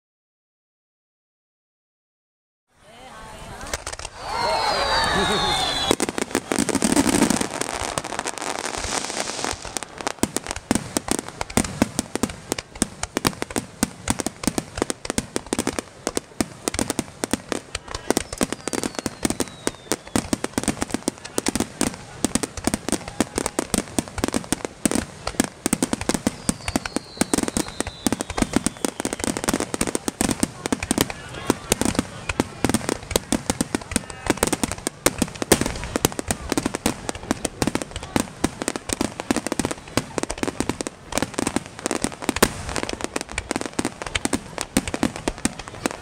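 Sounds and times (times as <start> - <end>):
fireworks bangs and crackles: 3.4 - 46.0
falling firework whistles: 3.7 - 10.3, 17.7 - 20.8, 26.1 - 30.0.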